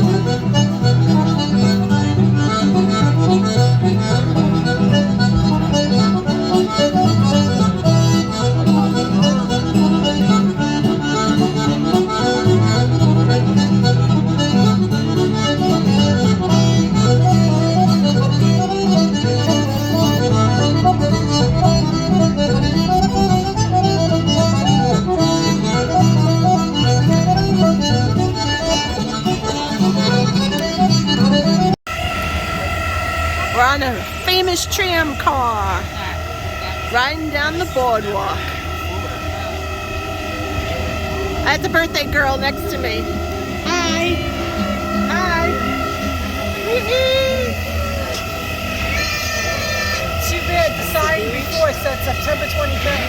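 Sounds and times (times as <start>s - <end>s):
irish-style folk music: 0.0s - 31.8s.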